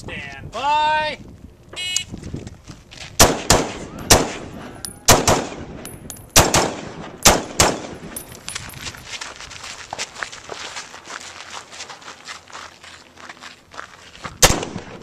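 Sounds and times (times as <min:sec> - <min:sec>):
rifle shots: 0:03.2 - 0:05.8, 0:06.4 - 0:08.2, 0:14.4 - 0:15.0.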